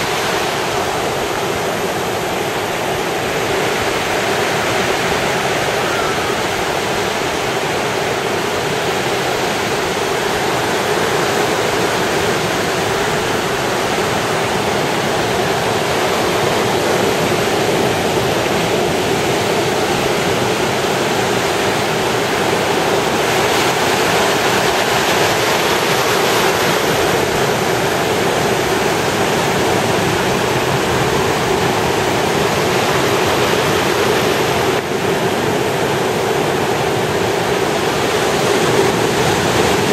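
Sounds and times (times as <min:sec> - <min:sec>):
waves breaking on sandy beach: 0:00.0 - 0:39.9.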